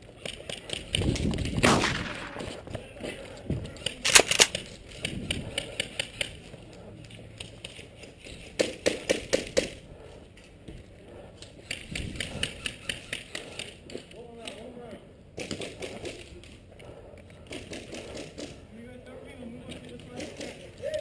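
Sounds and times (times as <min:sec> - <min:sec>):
airsoft guns firing: 0:00.6 - 0:02.9, 0:03.9 - 0:04.7.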